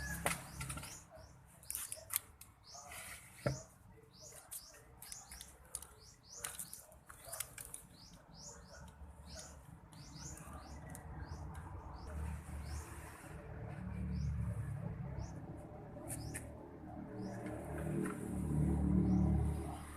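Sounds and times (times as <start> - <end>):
small bird chirping: 0.0 - 13.2.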